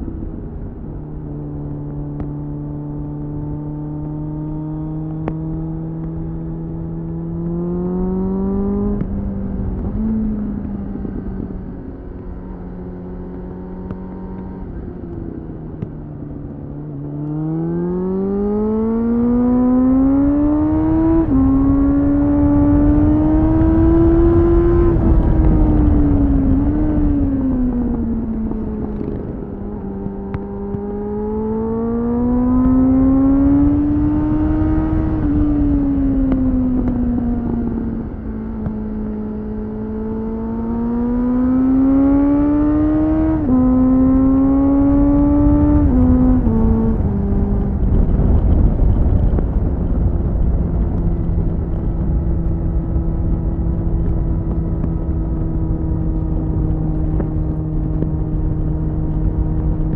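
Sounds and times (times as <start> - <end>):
motorcycle engine revving: 0.0 - 59.9
wind rush on microphone: 19.3 - 59.9.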